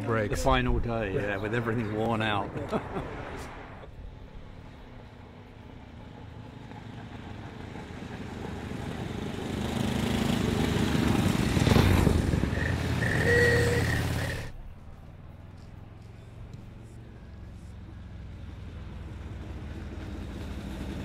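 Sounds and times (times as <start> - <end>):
motorcycle engine passing: 6.4 - 15.0
steady high tone: 12.6 - 14.5.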